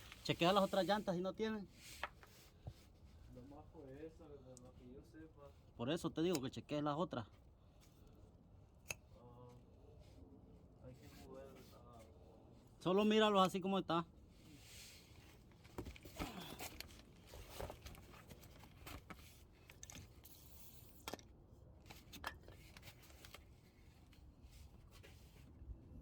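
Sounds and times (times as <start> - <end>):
objects being handled: 15.1 - 25.5.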